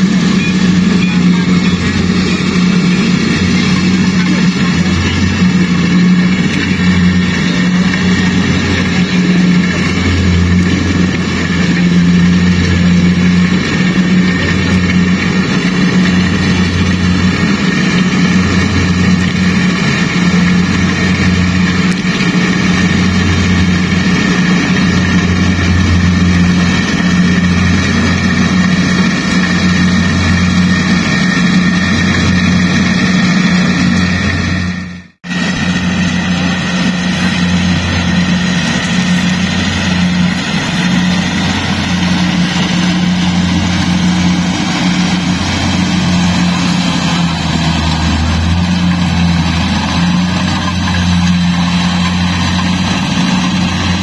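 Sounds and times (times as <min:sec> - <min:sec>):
harvester engine hum: 0:00.0 - 0:54.0
high machinery whine: 0:00.0 - 0:54.0.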